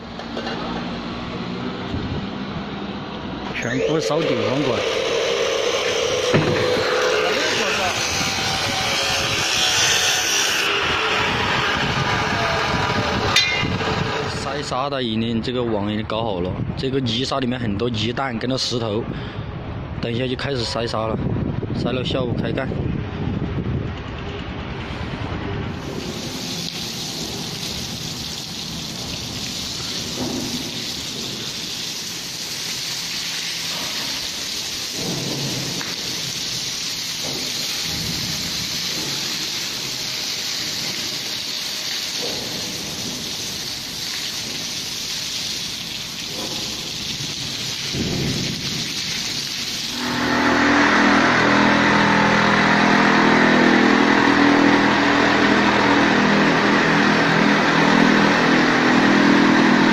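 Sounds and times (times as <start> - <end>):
motor-driven machine running: 3.5 - 14.4
steady rushing hiss: 25.8 - 50.1.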